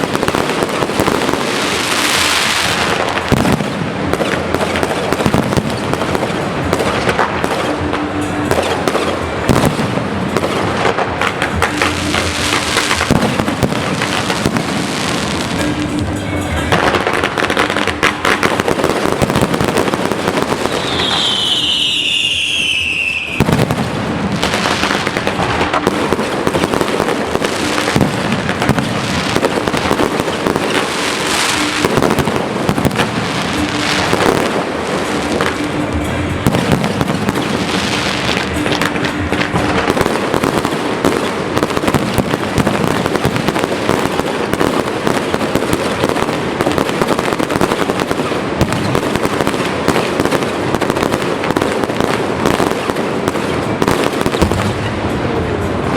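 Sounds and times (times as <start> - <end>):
fireworks crackling and banging: 0.0 - 55.9
whistling firework shell: 20.6 - 23.6.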